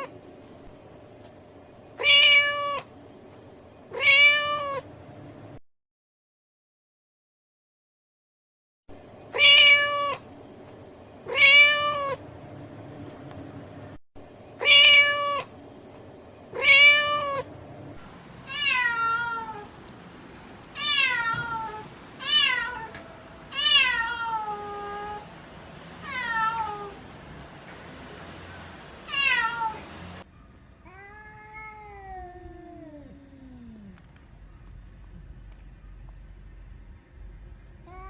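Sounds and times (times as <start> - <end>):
cat meowing: 2.0 - 2.9, 3.9 - 4.8, 9.3 - 10.2, 11.3 - 12.2, 14.6 - 15.5, 16.5 - 17.5, 18.5 - 19.7, 20.8 - 25.3, 26.0 - 27.0, 29.1 - 29.8, 30.8 - 34.0.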